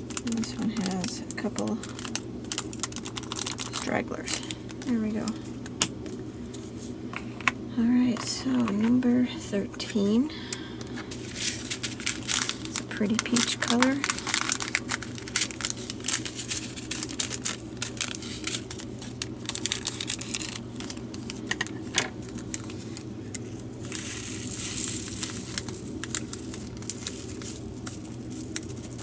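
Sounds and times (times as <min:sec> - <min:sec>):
plastic packet crinkling: 0:00.0 - 0:05.0, 0:10.9 - 0:29.0.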